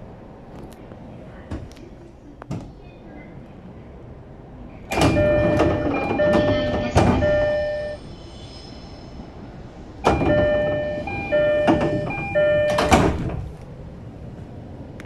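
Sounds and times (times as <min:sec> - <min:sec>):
sliding doors moving: 0:04.9 - 0:08.0, 0:09.8 - 0:14.9
train door chime: 0:04.9 - 0:08.1, 0:10.0 - 0:13.4.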